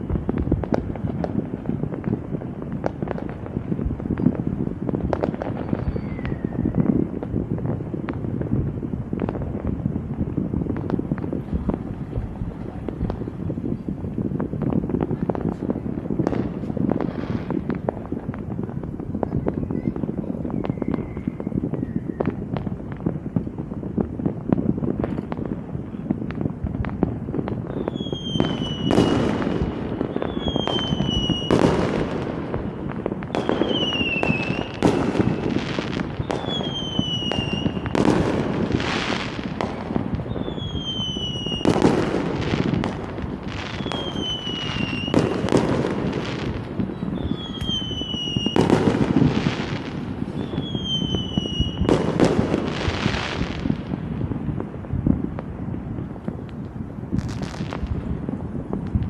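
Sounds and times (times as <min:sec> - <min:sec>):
fireworks bursting and crackling: 0:00.0 - 0:59.0.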